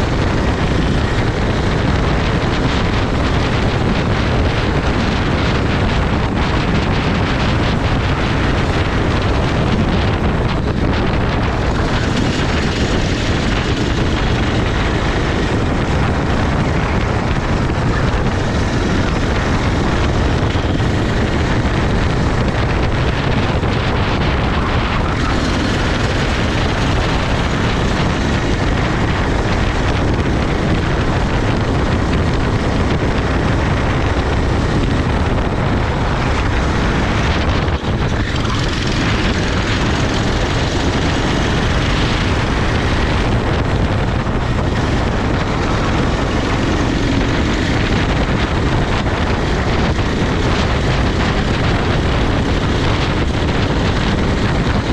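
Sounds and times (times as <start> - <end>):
kart engine running: 0.0 - 54.9
wind rush on microphone: 0.0 - 54.9.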